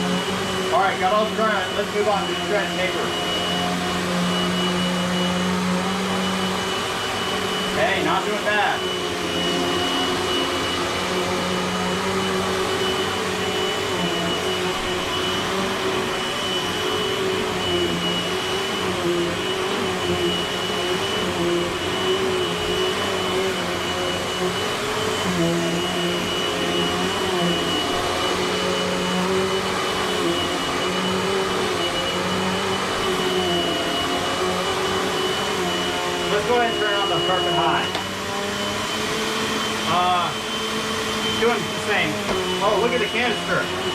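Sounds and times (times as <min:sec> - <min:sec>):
upright vacuum cleaner running: 0:00.0 - 0:43.9
thin high whine: 0:35.0 - 0:38.1.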